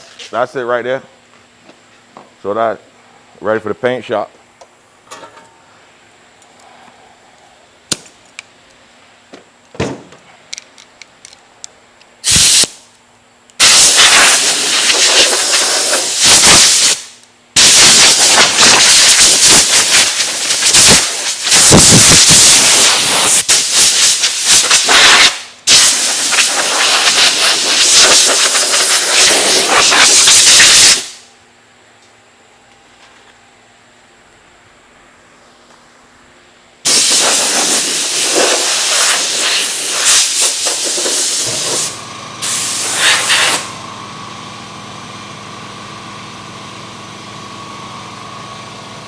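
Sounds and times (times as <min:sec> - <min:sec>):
compressed air hissing from nozzle: 0:12.2 - 0:12.8, 0:13.6 - 0:31.2, 0:36.9 - 0:43.8.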